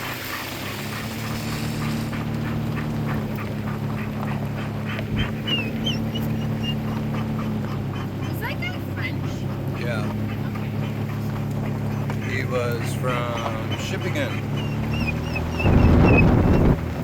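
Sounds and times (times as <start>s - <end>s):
car engine and road hum: 0.0s - 17.0s
high squeaks: 13.7s - 16.8s.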